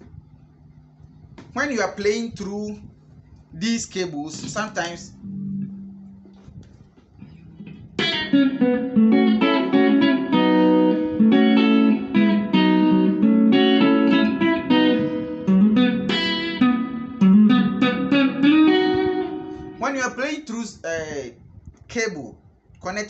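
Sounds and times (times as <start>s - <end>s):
electric guitar notes and chords: 4.4s - 6.5s, 7.2s - 19.9s.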